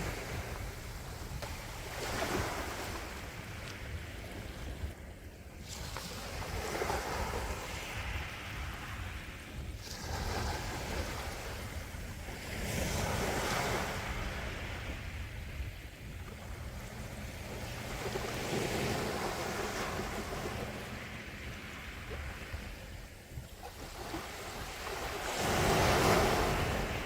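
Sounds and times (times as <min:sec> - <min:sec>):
sea waves washing in: 0:00.0 - 0:27.0.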